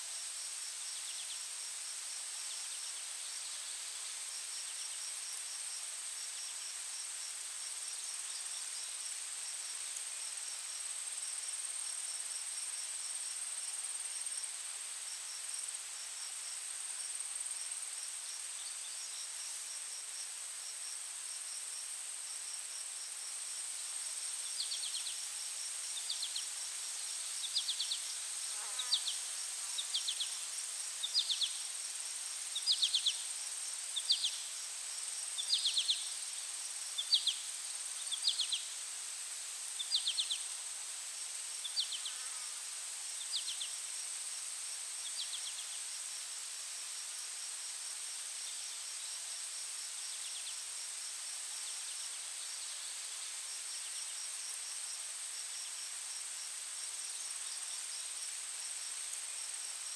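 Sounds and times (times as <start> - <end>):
insect chirps: 0.0 - 59.9
high-pitched insect buzz: 24.1 - 38.8, 39.6 - 44.0, 45.0 - 45.8.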